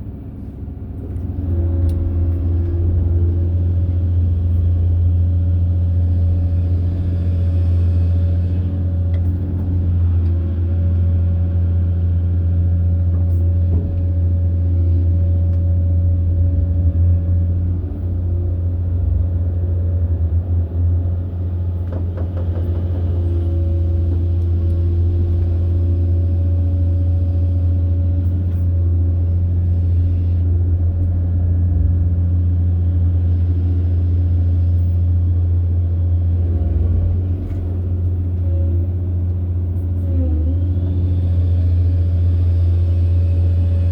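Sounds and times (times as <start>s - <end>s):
excavator diesel engine droning: 0.0s - 43.9s.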